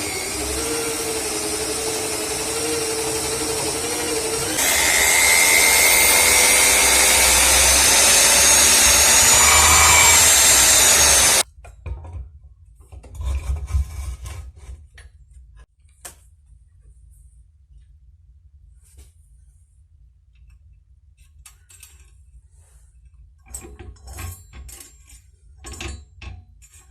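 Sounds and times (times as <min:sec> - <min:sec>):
power tool rasping on metal: 0:00.0 - 0:11.4.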